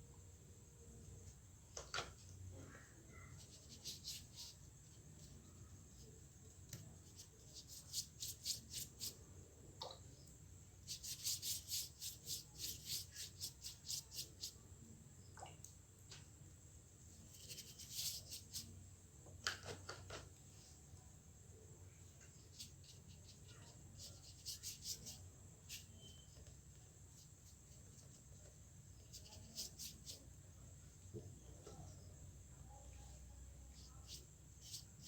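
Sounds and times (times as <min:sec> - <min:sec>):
faint steady hum: 0:00.0 - 0:35.0
paintbrush strokes on paper: 0:03.1 - 0:09.2, 0:10.8 - 0:14.6, 0:17.1 - 0:18.8, 0:22.0 - 0:30.4, 0:32.7 - 0:35.0.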